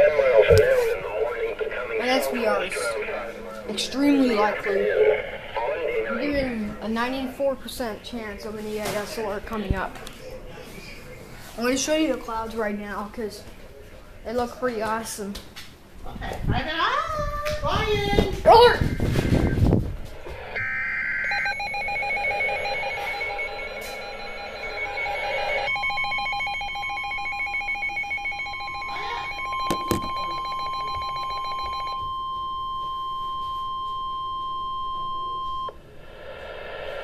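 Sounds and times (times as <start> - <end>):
steady warning tone: 20.4 - 37.0
digital header tones: 20.6 - 35.8
pulsed electronic alarm beeping: 20.6 - 35.8.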